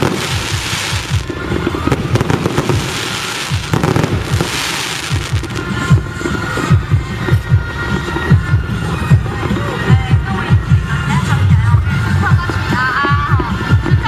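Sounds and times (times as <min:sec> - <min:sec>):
fireworks hissing: 0:00.0 - 0:08.2
fireworks bangs and crackling: 0:00.0 - 0:11.3, 0:12.1 - 0:14.0.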